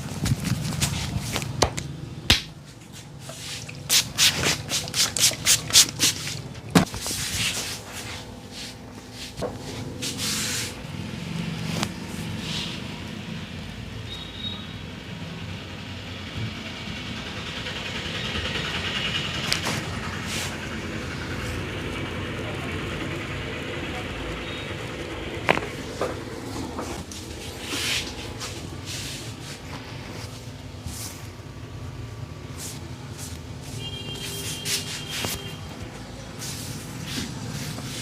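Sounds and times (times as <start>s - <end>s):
street background noise: 0.0s - 38.0s
hands slapping skin: 1.6s - 2.6s
hands rubbing: 2.9s - 10.8s, 26.8s - 31.2s, 34.2s - 35.6s.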